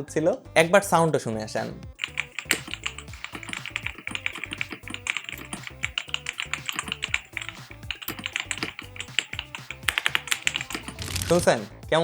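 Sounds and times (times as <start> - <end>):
background music: 0.0 - 12.0
mechanical keyboard typing: 2.0 - 11.6.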